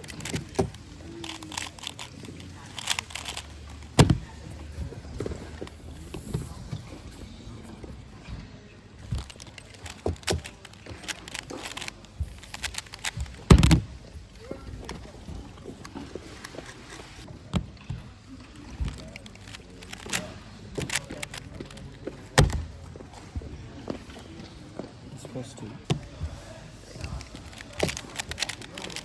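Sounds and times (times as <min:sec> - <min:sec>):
plastic puzzle clicking: 0:00.0 - 0:07.1, 0:09.0 - 0:15.1, 0:18.7 - 0:22.7, 0:27.0 - 0:29.0.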